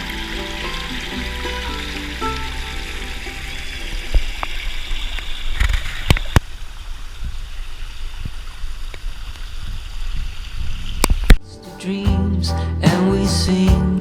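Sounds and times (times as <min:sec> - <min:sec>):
water rushing: 0:00.0 - 0:05.5.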